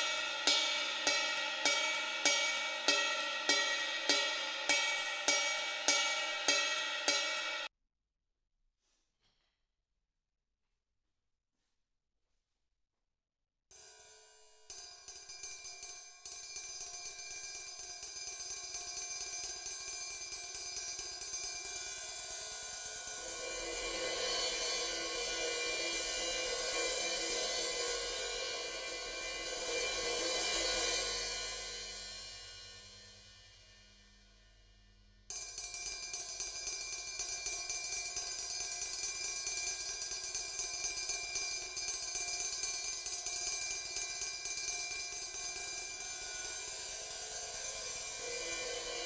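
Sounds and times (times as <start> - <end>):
rapid strikes on ride cymbal: 0.0 - 7.7, 13.8 - 49.0.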